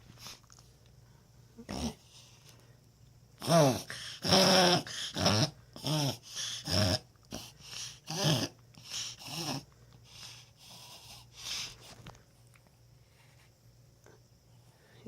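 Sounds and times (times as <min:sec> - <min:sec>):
dog snorting breaths: 0:03.5 - 0:12.1.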